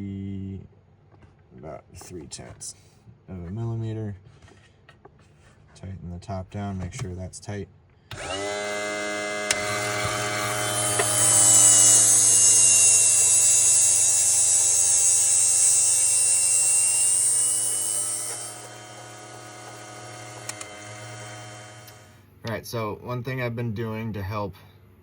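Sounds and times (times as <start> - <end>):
cutting bit hissing on foam: 8.1 - 22.2
electric motor whine: 8.1 - 22.2.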